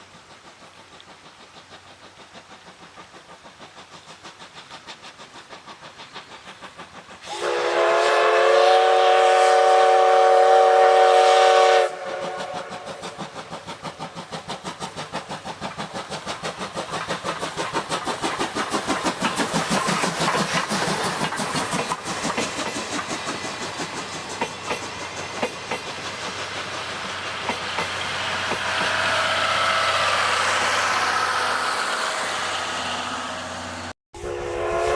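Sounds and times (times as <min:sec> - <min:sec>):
steam locomotive chuffing: 0:00.0 - 0:34.9
steam whistle blast: 0:07.2 - 0:13.0, 0:31.9 - 0:34.9.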